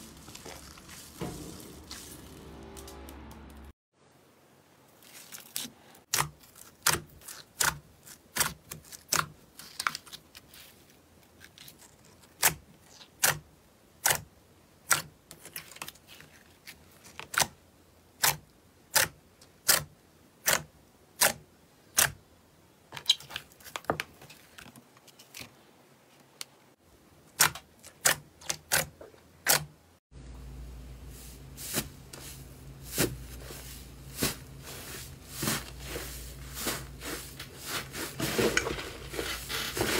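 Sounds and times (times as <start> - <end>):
low hum: 0.0 - 3.8.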